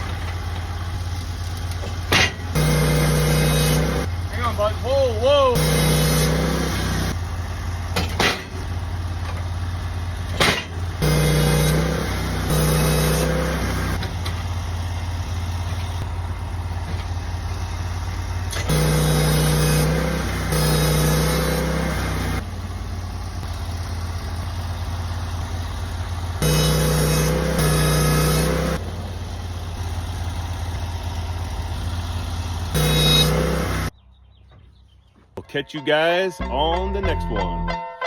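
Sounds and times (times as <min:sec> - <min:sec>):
sawmill engine drone: 0:00.0 - 0:34.0.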